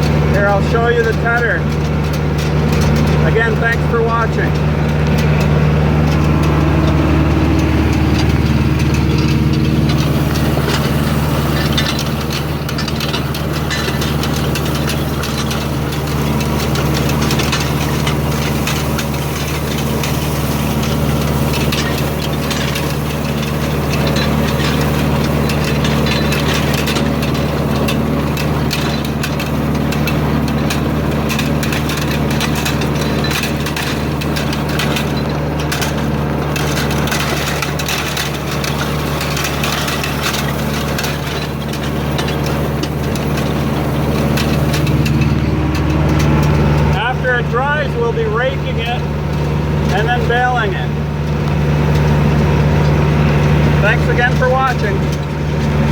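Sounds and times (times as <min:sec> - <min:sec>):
hay tedder rattling: 0:00.0 - 0:55.9
tractor engine running: 0:00.0 - 0:55.9.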